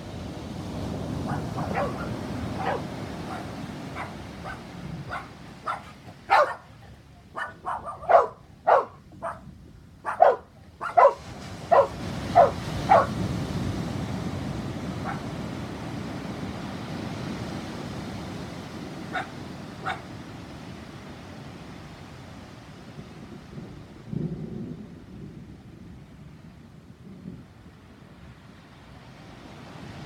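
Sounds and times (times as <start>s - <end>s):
dog barking: 1.2s - 13.2s, 15.0s - 15.4s, 19.1s - 20.2s.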